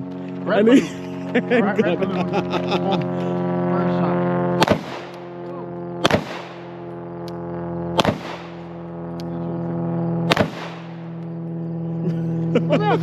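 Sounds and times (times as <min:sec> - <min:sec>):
low steady hum: 0:00.0 - 0:13.0
handgun shots: 0:04.6 - 0:05.2, 0:06.0 - 0:06.6, 0:08.0 - 0:08.6, 0:10.3 - 0:11.0.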